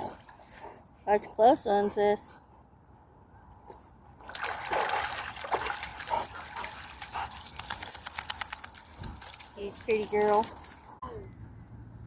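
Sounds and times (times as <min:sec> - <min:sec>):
water splashing and trickling: 0:04.2 - 0:11.0.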